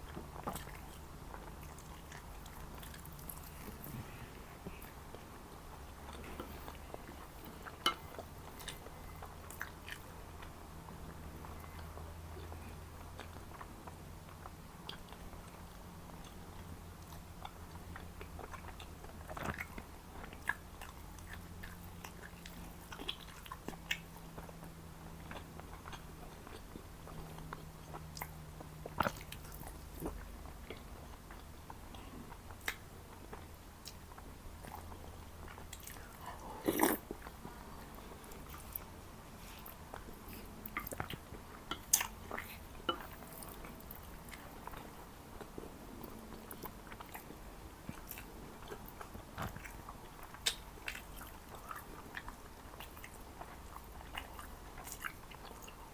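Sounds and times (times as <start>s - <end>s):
faint low hum: 0.0s - 55.9s
soft chewing: 0.0s - 55.9s
wet mouth clicks and smacks: 50.4s - 51.1s.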